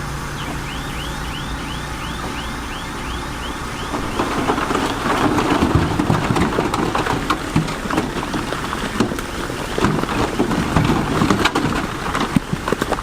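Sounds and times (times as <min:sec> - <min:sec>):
diesel engine rumble: 0:00.0 - 0:13.0
rocks knocking and clattering: 0:03.2 - 0:13.0.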